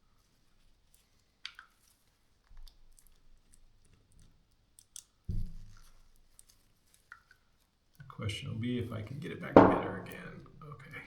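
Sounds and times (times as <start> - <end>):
heavy thump: 9.5 - 10.3.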